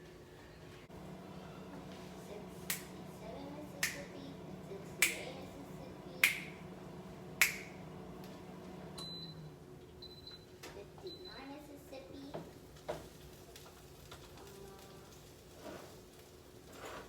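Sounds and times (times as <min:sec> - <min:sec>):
steady low hum: 0:00.0 - 0:10.2.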